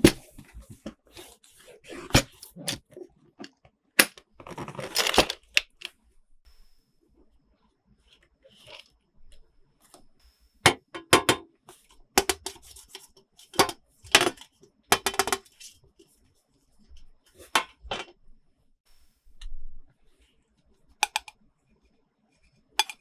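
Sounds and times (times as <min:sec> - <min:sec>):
plastic toy pieces clicking: 0:21.0 - 0:21.3.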